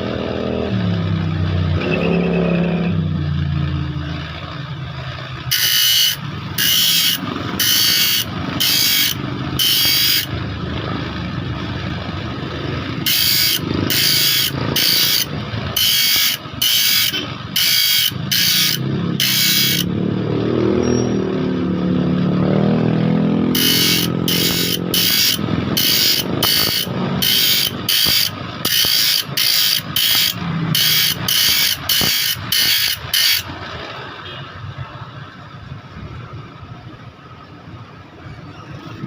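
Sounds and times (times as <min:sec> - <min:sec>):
engine-like hum: 0:00.0 - 0:39.0
file rasping on saw blade: 0:05.5 - 0:10.3, 0:13.0 - 0:19.9, 0:23.5 - 0:33.5.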